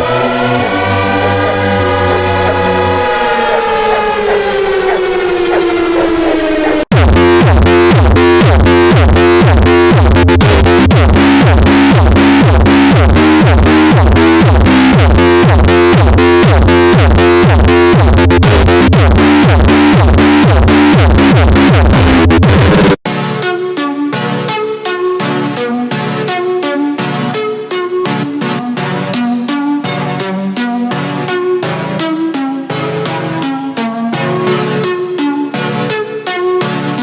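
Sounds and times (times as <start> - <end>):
harsh electronic alarm tones: 0.0 - 22.4.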